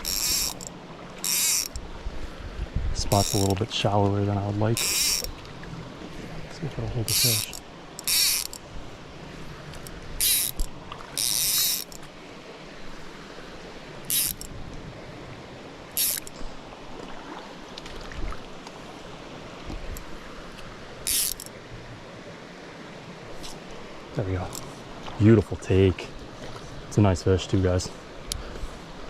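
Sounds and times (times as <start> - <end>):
fishing reel drag buzzing: 0.0 - 1.9, 3.1 - 3.5, 4.8 - 5.3, 7.1 - 8.6, 9.8 - 12.0, 14.0 - 14.5, 15.9 - 16.4, 21.0 - 21.5
small stream running: 0.0 - 29.0.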